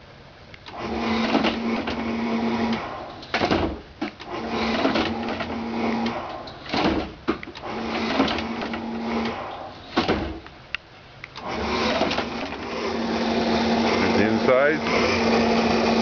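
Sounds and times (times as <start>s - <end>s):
pump motor humming: 0.6s - 10.4s, 11.4s - 16.0s
loud plastic clatter: 2.7s - 10.4s.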